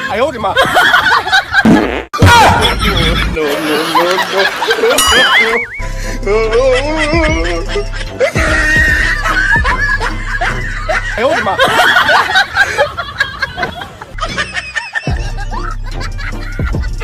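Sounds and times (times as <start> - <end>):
laughter and snickering: 2.5 - 17.0
background music with bass line: 5.0 - 12.2, 14.2 - 17.0.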